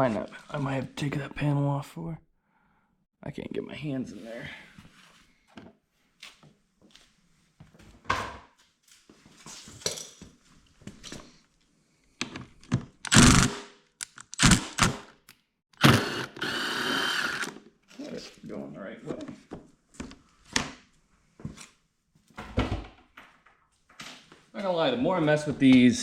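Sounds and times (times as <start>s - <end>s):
cordless power driver running: 13.1s - 13.6s, 14.3s - 15.0s, 15.8s - 17.6s.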